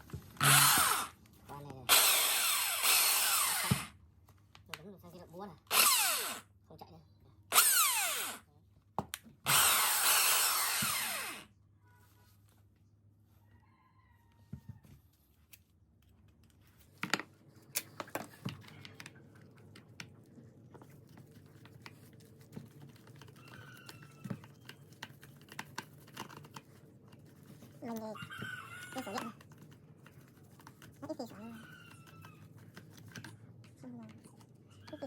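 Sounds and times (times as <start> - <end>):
rotary hammer drill running: 0.4 - 1.2, 1.9 - 3.9, 5.7 - 6.5, 7.5 - 8.4, 9.5 - 11.5.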